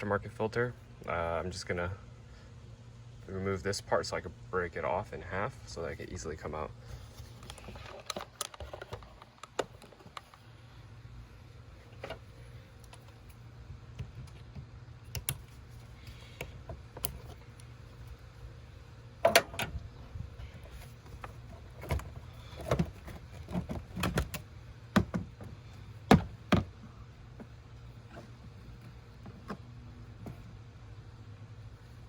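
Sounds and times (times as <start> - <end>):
engine parts clicking and knocking: 7.0 - 10.5, 19.2 - 30.6.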